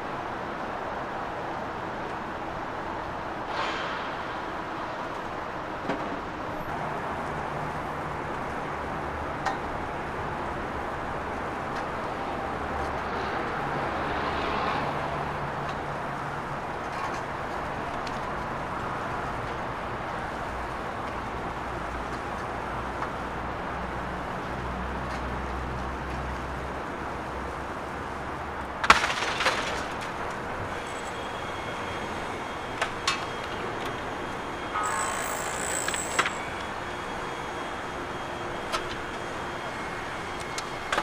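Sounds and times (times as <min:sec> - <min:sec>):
demolition machinery engine drone: 0:26.4 - 0:41.0.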